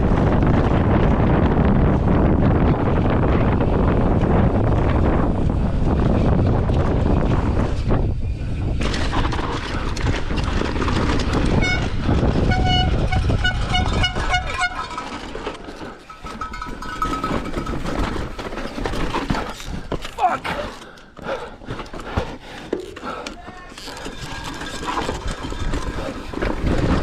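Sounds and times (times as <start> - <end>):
wind rushing over microphone: 0.0 - 20.1, 24.3 - 27.0
bike rattling over rock: 8.6 - 20.2, 23.6 - 27.0
horn-like toots: 11.6 - 15.0.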